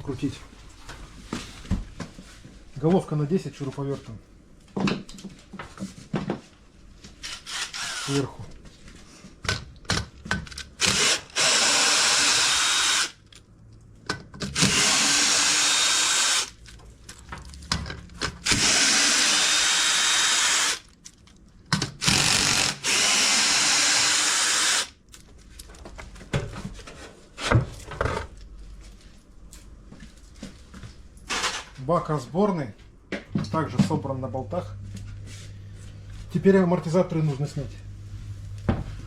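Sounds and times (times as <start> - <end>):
cordless screwdriver running: 7.2 - 8.3, 10.8 - 13.2, 14.6 - 16.6, 18.4 - 20.8, 22.0 - 24.9.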